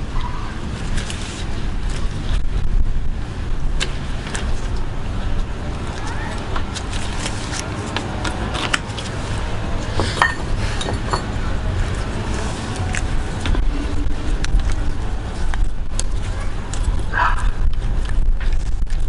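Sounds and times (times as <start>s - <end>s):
low rumble: 0.0s - 19.0s
metal parts clinking: 10.0s - 11.4s.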